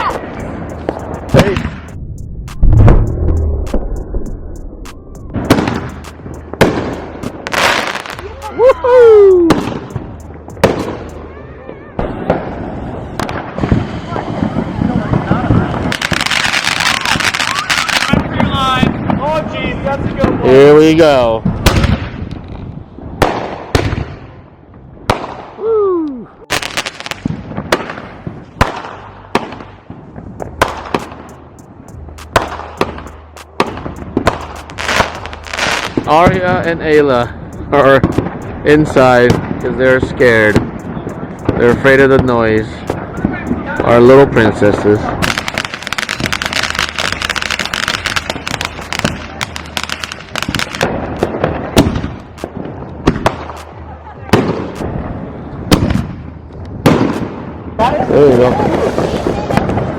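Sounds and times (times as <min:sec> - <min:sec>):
fireworks crackling pops: 0:00.0 - 0:11.4, 0:12.0 - 0:24.3, 0:25.0 - 0:59.9
fireworks bangs: 0:00.0 - 0:24.4, 0:25.0 - 0:25.6, 0:26.4 - 0:59.9.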